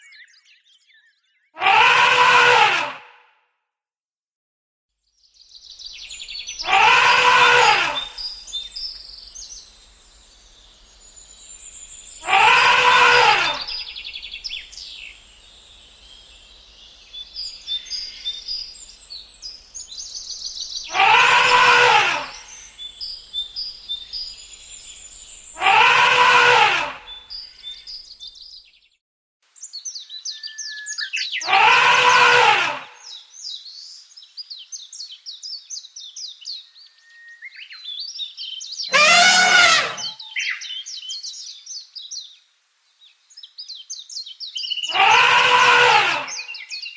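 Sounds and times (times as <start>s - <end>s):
loud drawn-out animal call: 1.6s - 3.3s, 6.6s - 8.4s, 12.2s - 14.0s, 20.9s - 22.8s, 25.6s - 27.3s, 31.4s - 33.1s, 38.9s - 40.5s, 44.9s - 46.7s
birds chirping: 5.3s - 28.8s, 38.6s - 42.3s, 43.4s - 46.9s.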